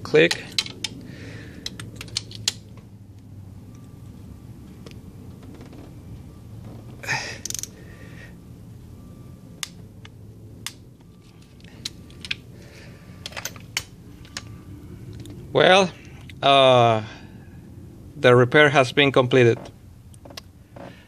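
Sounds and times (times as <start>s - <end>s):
hand tools and metal parts clinking: 0.0s - 2.8s, 7.1s - 7.8s, 9.6s - 12.5s, 13.2s - 14.6s
low steady hum: 0.0s - 21.0s.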